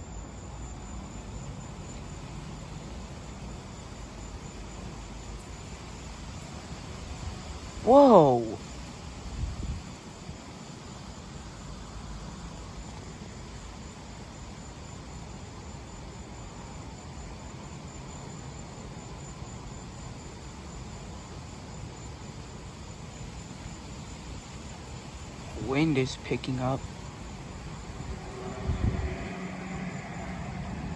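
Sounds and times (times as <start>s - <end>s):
wind hiss and rumble: 0.0s - 15.0s, 21.6s - 30.9s
crickets chirring: 0.0s - 30.9s.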